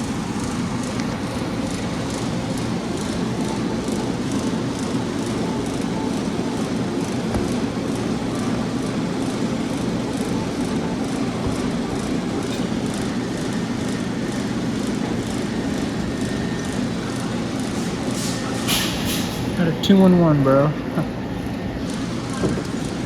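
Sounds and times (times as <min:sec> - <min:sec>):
mechanical rumble: 0:00.0 - 0:23.0.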